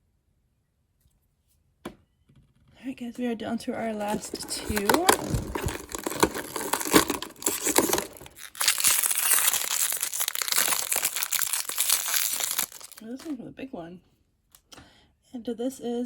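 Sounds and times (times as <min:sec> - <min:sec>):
plastic packaging crinkling: 0:03.8 - 0:13.3.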